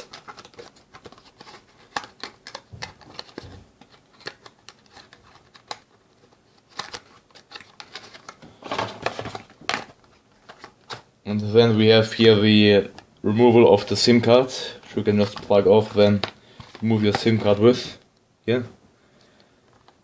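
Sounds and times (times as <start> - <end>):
packaging being handled: 0.0 - 11.0, 14.7 - 17.6.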